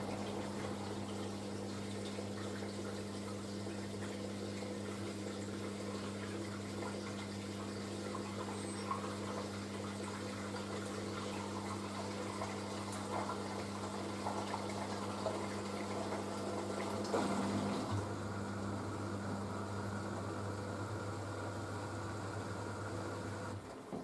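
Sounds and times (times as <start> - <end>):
washing machine electric hum: 0.0 - 24.0
water running in washing machine: 0.0 - 24.0.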